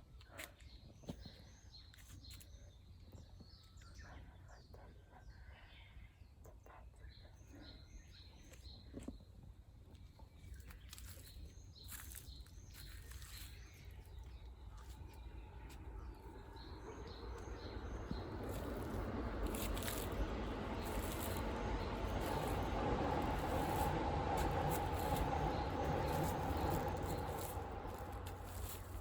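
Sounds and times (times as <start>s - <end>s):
small birds chirping: 0.0s - 29.0s
low steady rumble: 4.0s - 29.0s
rushing noise: 17.8s - 29.0s.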